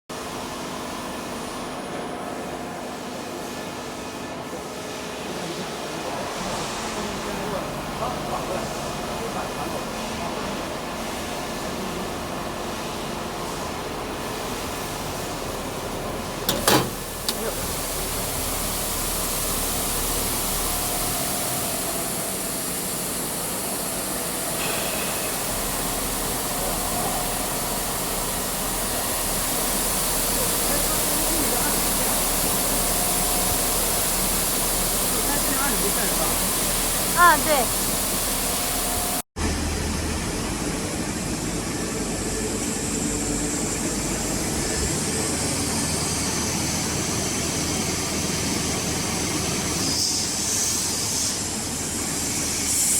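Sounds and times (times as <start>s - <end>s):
wire saw running: 16.5s - 39.2s.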